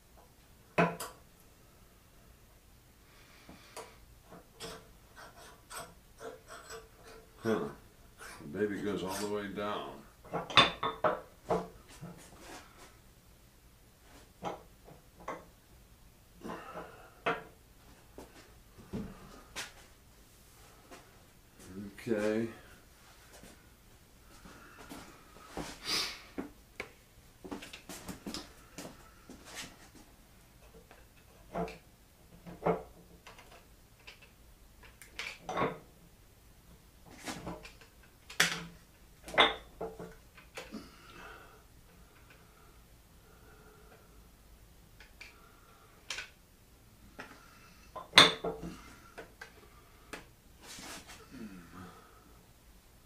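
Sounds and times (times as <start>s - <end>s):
clicks and knocks of hand work: 3.8s - 7.4s, 10.3s - 12.2s, 30.6s - 35.9s.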